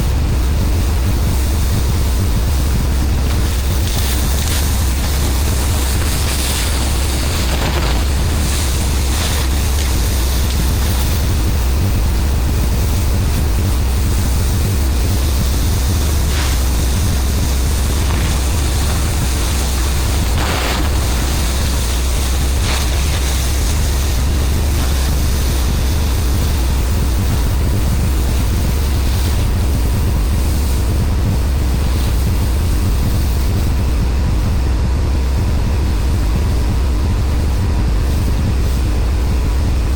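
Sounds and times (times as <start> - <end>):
engine drone: 0.0 - 39.9
high-pressure water spraying: 1.8 - 30.8.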